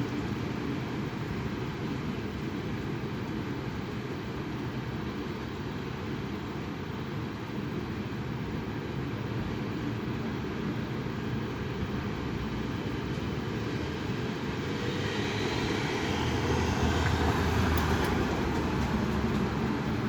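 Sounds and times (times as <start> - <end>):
wind buffeting microphone: 14.2 - 20.0.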